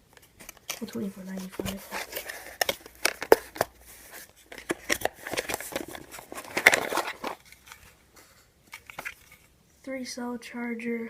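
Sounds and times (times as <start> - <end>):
packaging rustling: 0.0 - 8.0, 8.7 - 9.5.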